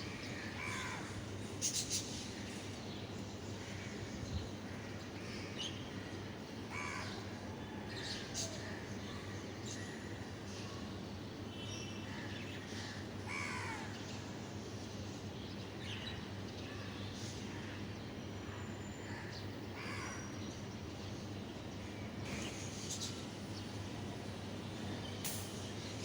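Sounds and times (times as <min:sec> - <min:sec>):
harsh bird caws: 0:00.2 - 0:01.2, 0:04.7 - 0:10.3, 0:12.1 - 0:14.0, 0:17.3 - 0:20.3
steady low hum: 0:12.8 - 0:26.0.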